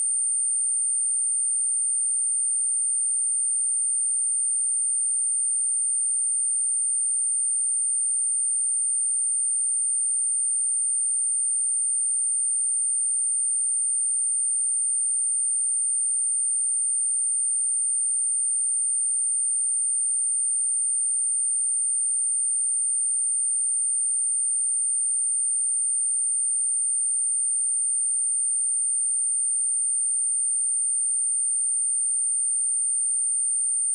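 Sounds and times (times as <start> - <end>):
high-pitched sine test tone: 11.7 - 33.9.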